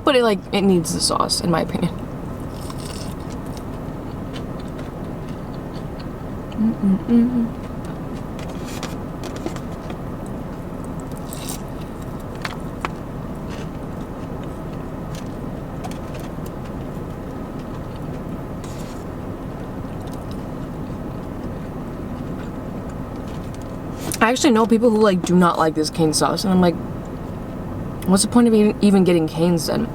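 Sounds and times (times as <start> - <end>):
low hum: 0.0 - 29.9
chewing fried chicken: 2.0 - 6.6, 7.5 - 24.2.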